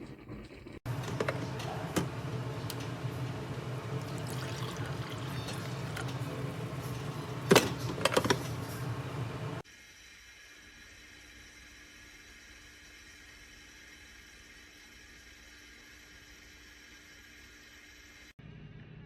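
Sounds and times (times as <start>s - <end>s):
water pouring: 1.4s - 8.2s.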